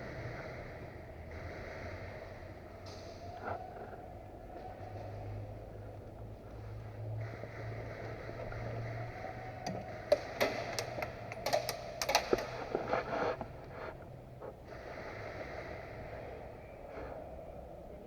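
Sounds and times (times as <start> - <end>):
airsoft gun cracks and clicks: 9.7 - 12.9.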